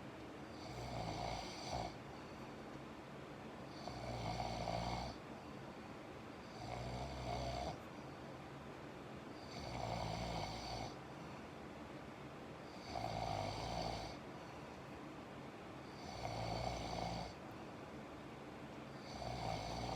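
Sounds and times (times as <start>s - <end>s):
person snoring: 19.0s - 19.9s.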